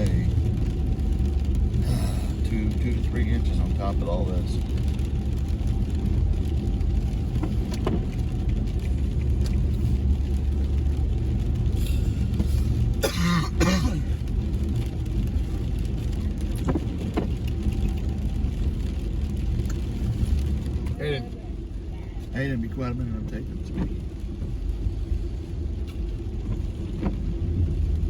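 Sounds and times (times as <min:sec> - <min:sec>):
car engine and road noise: 0:00.0 - 0:28.0.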